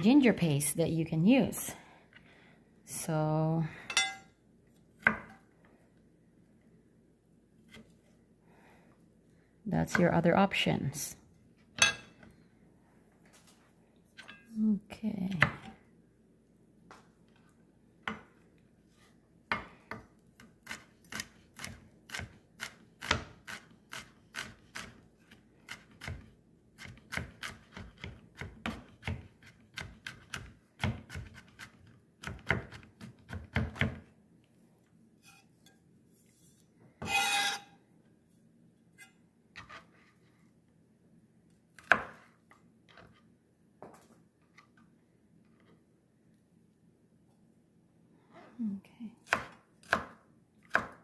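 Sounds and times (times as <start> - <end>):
knife chopping on cutting board: 5.0 - 5.4, 25.7 - 34.0, 41.8 - 42.2, 49.2 - 51.0.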